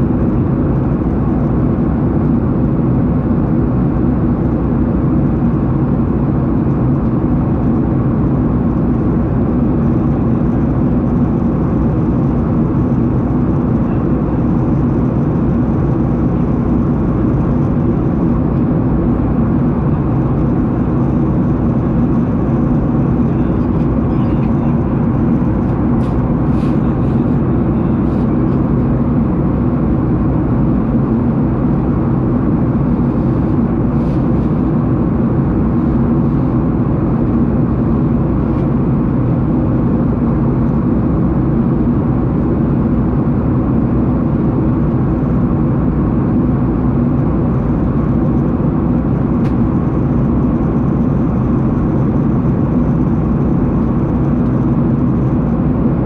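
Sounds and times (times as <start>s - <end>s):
airliner cabin drone: 0.0s - 56.0s.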